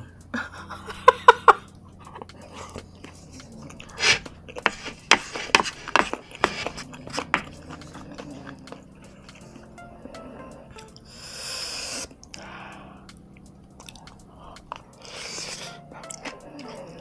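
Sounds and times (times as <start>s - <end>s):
person chewing food: 2.1s - 9.7s, 13.8s - 17.0s.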